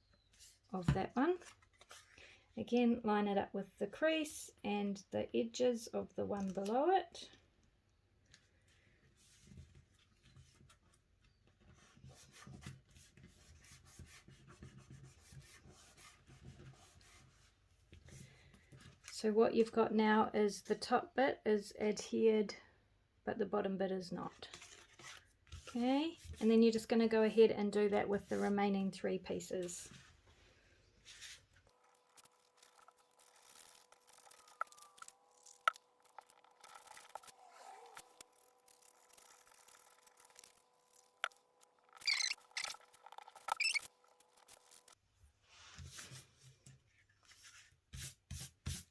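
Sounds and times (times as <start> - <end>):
paper cards rubbing and rustling: 24.5 - 26.4, 31.0 - 46.5.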